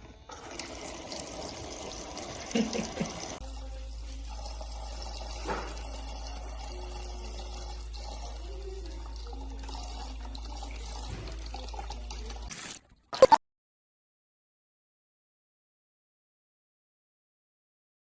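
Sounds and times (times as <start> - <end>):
water running into small basin: 0.3 - 13.4.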